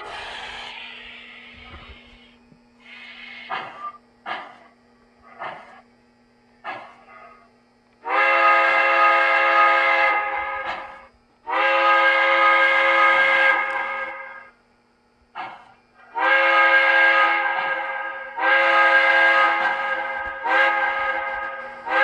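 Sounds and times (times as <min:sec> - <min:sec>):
hissing steam puffs: 0:00.0 - 0:04.7
model train steam whistle: 0:08.0 - 0:14.6, 0:15.4 - 0:22.0.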